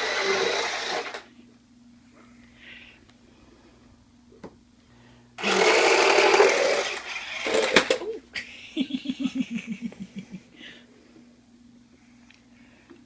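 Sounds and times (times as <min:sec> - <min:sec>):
toy car electric motor whirring: 0:00.0 - 0:01.3, 0:05.4 - 0:08.0.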